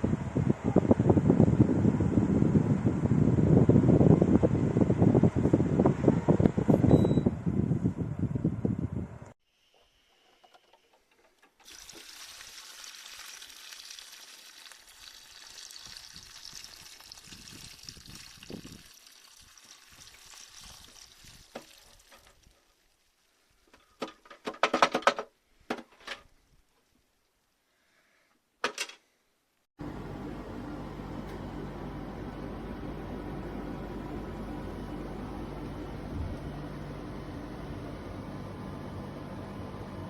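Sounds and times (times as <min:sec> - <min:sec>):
fan hum: 0:00.0 - 0:09.4, 0:29.8 - 0:40.0
steady hiss of water: 0:11.6 - 0:23.7
sharp knocks and clatters: 0:23.7 - 0:26.2.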